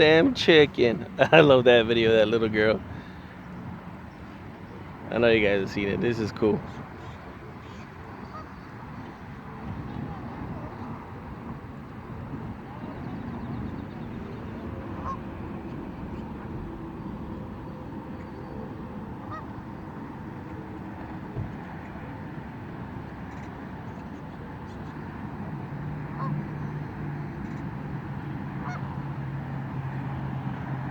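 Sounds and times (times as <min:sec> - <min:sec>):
geese honking: 0:07.0 - 0:08.5, 0:14.8 - 0:15.4, 0:19.2 - 0:19.6, 0:26.0 - 0:27.0, 0:28.5 - 0:29.2.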